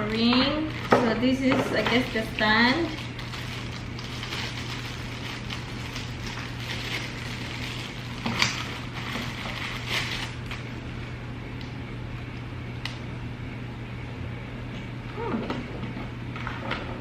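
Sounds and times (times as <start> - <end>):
plastic parts and packaging rustling: 0.0 - 11.0
steady low hum: 0.0 - 17.0.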